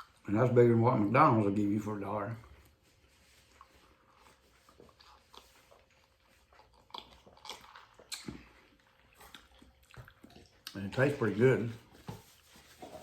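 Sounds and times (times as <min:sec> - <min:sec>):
man chewing fries: 0:00.0 - 0:00.3, 0:02.3 - 0:12.0
mouth smacks and clicks: 0:06.8 - 0:10.8.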